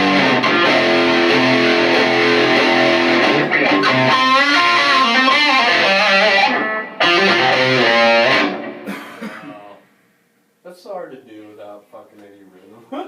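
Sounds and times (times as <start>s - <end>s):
electric guitar playing: 0.0s - 8.9s.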